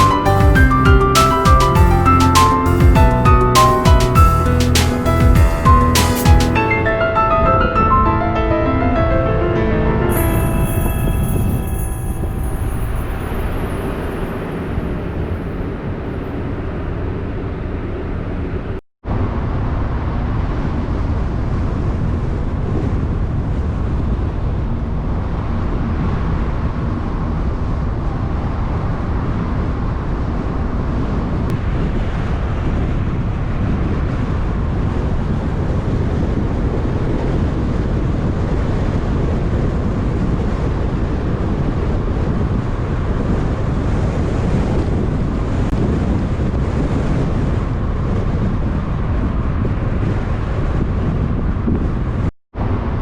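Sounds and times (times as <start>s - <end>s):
wind buffeting the microphone: 30.4s - 53.0s.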